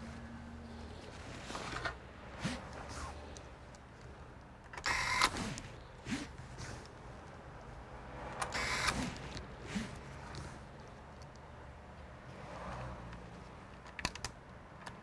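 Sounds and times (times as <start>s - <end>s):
small electric motor whirring: 8.5s - 9.9s.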